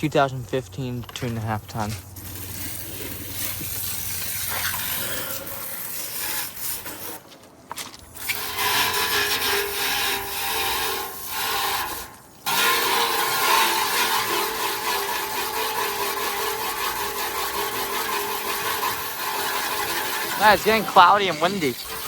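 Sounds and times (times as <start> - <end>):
hose spraying water: 1.7 - 7.3, 8.2 - 22.0.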